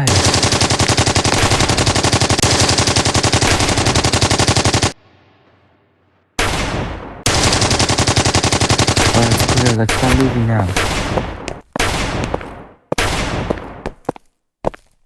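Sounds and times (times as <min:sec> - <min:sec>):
machine-gun fire: 0:00.1 - 0:05.0, 0:06.4 - 0:13.7
loud blast: 0:09.9 - 0:11.5.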